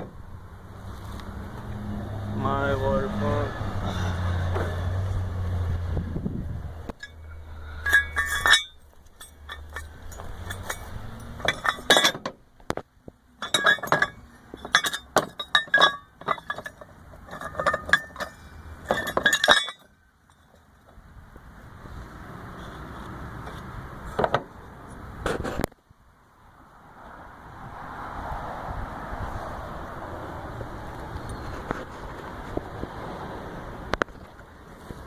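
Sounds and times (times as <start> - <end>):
engine humming: 0.0 - 25.7
metal parts clinking and rattling: 7.0 - 12.4, 13.4 - 20.7.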